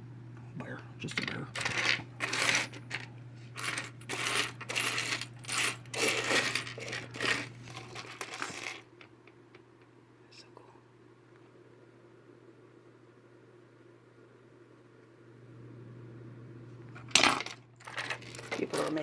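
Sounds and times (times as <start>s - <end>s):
figurines clinking and clattering: 1.0s - 9.6s, 17.0s - 19.0s.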